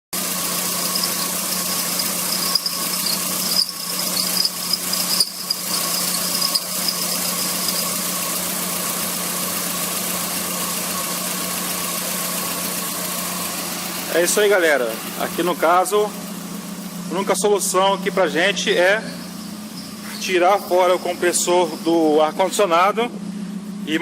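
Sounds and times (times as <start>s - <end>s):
car engine running: 0.1s - 24.0s
compressor high squeal: 0.4s - 8.4s, 14.2s - 24.0s.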